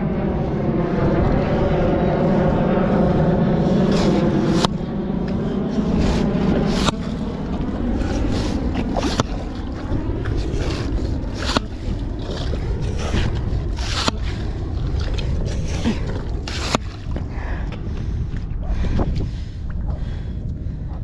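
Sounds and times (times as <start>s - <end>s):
wind rumble on microphone: 0.0s - 21.0s
wet splashes: 2.9s - 17.8s.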